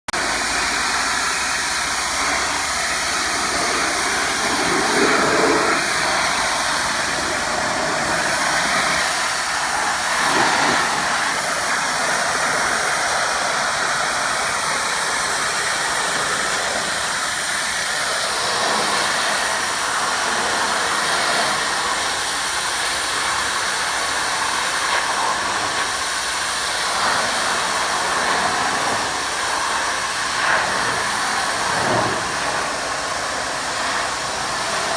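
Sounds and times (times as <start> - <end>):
pressure washer spraying: 0.1 - 34.9.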